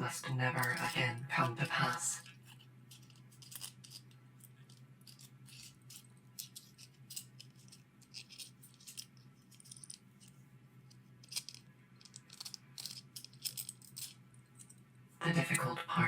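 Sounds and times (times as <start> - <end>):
faint low hum: 0.0 - 16.0
metal tools clinking: 2.9 - 10.0, 11.2 - 14.8.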